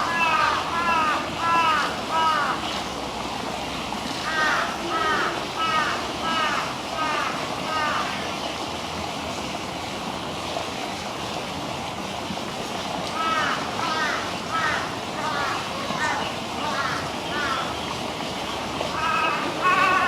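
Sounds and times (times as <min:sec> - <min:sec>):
crow cawing: 0:00.0 - 0:02.6, 0:04.3 - 0:08.1, 0:13.2 - 0:17.7, 0:19.0 - 0:20.0
steady background hiss: 0:00.0 - 0:20.0.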